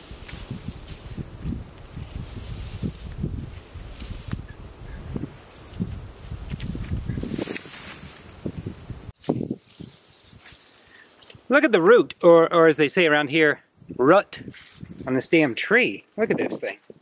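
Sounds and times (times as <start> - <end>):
low thumps and rustles: 0.0 - 10.7
crickets chirring: 0.0 - 17.0.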